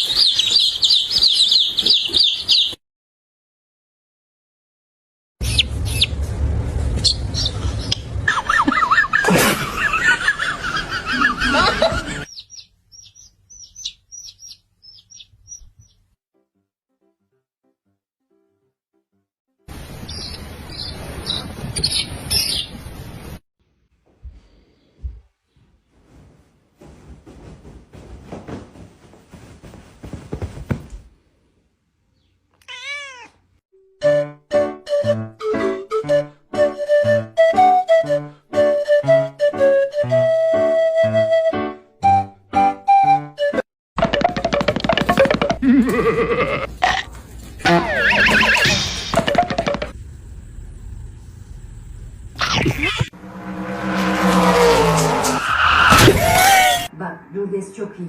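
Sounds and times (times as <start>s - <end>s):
rustling noise: 5.7s - 7.8s, 21.0s - 31.8s, 46.7s - 47.7s
background noise: 19.8s - 33.6s, 56.0s - 58.0s
cat meowing: 32.6s - 33.5s.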